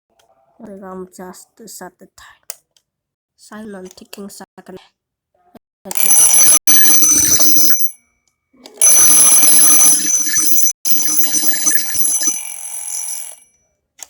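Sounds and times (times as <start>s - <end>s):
alarm clock bells ringing: 5.9s - 8.0s, 8.8s - 13.5s.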